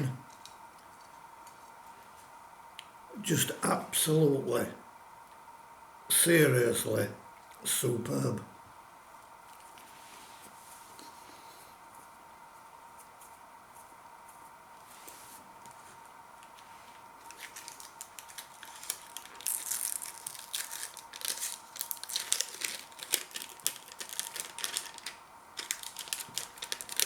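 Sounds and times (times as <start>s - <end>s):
faint steady whine: 0.0s - 27.0s
plastic packaging crinkling: 17.2s - 27.0s.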